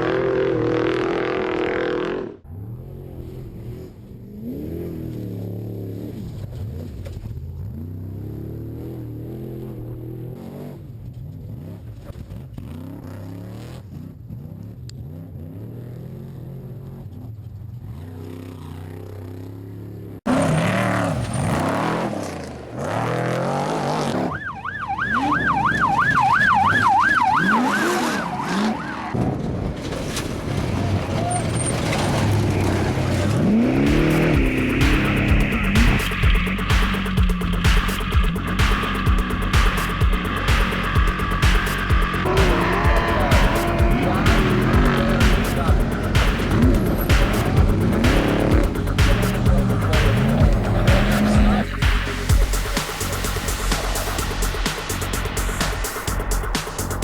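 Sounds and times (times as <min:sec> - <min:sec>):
truck engine revving: 0:00.0 - 0:57.0
warbling siren: 0:24.0 - 0:29.2, 0:33.4 - 0:47.2.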